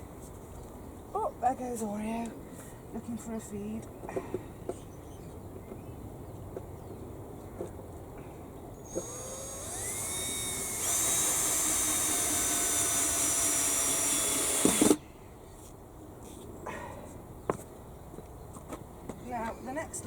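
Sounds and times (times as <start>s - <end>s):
power drill running: 8.8s - 15.0s.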